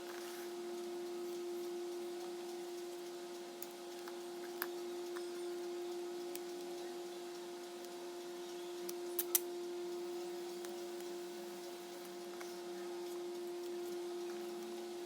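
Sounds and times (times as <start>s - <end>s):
electrical hum: 0.0s - 15.0s
sharp clicks: 8.9s - 9.5s.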